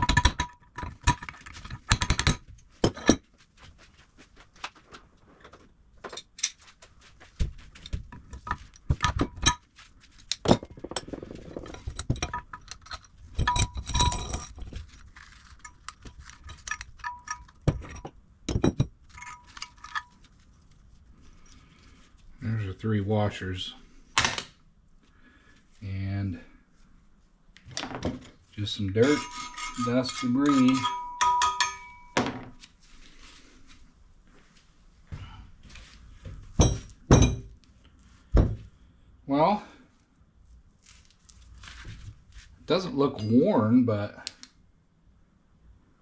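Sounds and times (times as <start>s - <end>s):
metal parts knocking and clinking: 0.0s - 3.3s, 7.8s - 9.6s, 10.3s - 20.3s, 29.0s - 32.6s, 36.6s - 37.6s.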